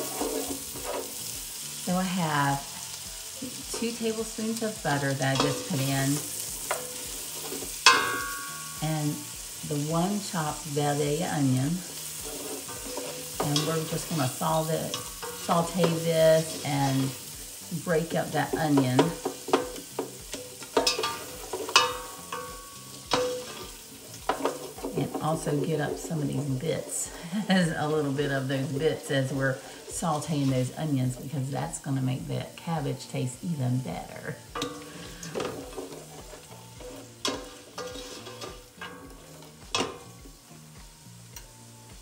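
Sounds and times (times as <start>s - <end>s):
utensil scraping a pot: 0.0s - 2.7s, 3.4s - 31.4s, 33.9s - 40.2s
onion sizzling in butter: 0.0s - 42.0s
utensil clinking against pot: 6.6s - 8.8s, 18.6s - 26.1s, 34.5s - 40.2s.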